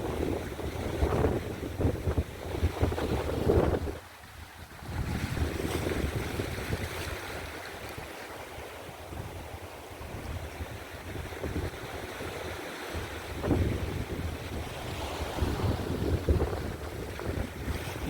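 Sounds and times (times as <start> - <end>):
wind buffeting microphone: 0.0 - 8.0, 9.0 - 18.0
sea surf rushing: 4.7 - 18.0.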